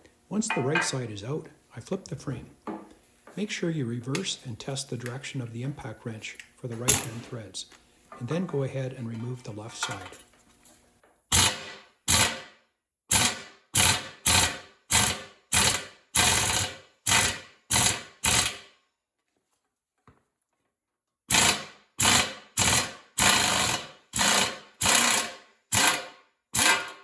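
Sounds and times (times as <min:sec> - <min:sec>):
impact wrench hammering: 0:00.5 - 0:01.0, 0:06.8 - 0:07.4, 0:11.3 - 0:12.4, 0:21.3 - 0:27.0.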